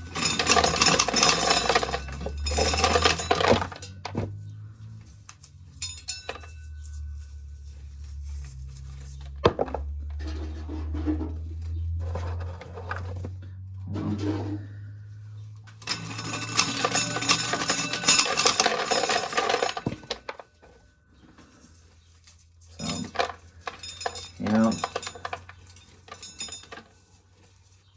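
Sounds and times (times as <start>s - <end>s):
corn kernels rattling into container: 0.0s - 4.2s, 15.8s - 20.4s, 22.8s - 27.8s.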